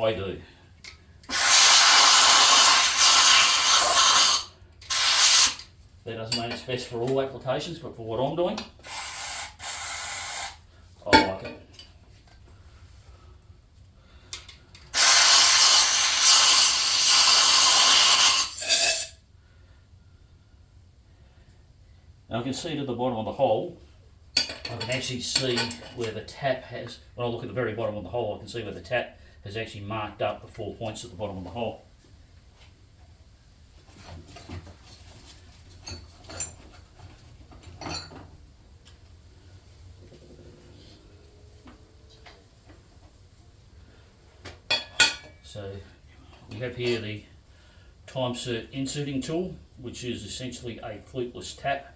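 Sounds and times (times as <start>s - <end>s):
aerosol spray hissing: 1.3s - 5.6s, 8.9s - 10.6s, 15.0s - 19.1s
metal tools clinking: 35.8s - 36.8s, 37.6s - 38.2s.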